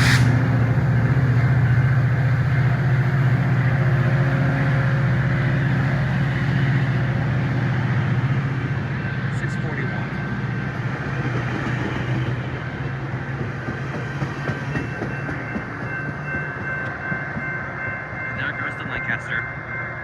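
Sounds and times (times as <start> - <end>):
diesel locomotive droning: 0.0 - 20.0.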